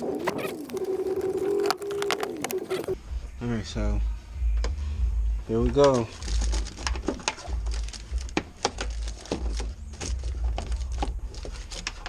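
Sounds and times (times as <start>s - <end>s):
clicks taps and rustles: 5.7s - 12.0s.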